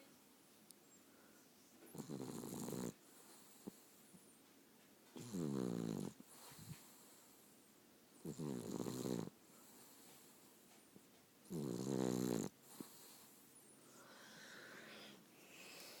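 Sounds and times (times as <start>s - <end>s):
cat snoring: 1.9s - 3.9s, 5.2s - 7.2s, 8.2s - 10.2s, 11.4s - 13.4s.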